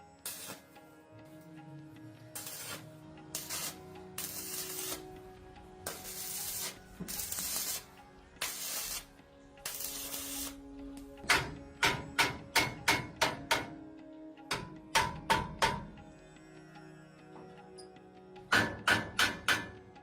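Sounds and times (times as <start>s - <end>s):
pressurised spray hissing: 2.4s - 5.2s, 5.9s - 9.1s, 9.7s - 10.6s.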